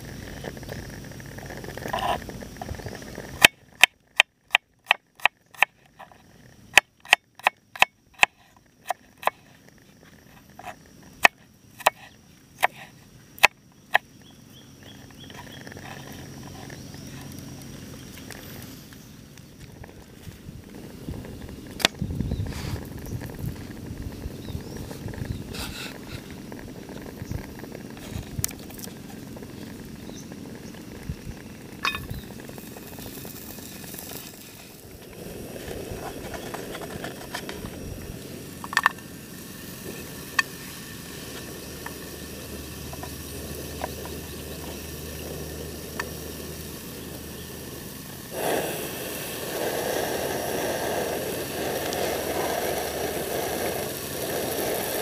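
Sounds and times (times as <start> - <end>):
steady low rumble: 13.7 - 54.6.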